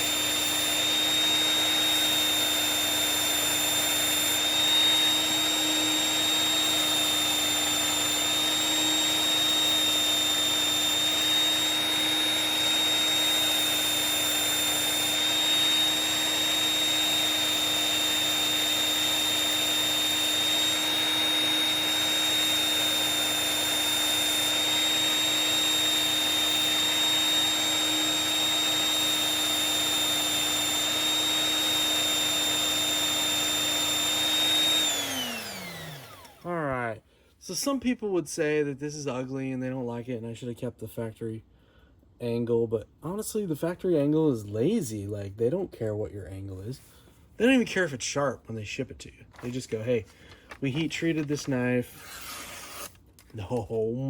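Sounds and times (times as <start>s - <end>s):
knife sharpener motor whining: 0.0s - 36.5s, 51.9s - 53.2s.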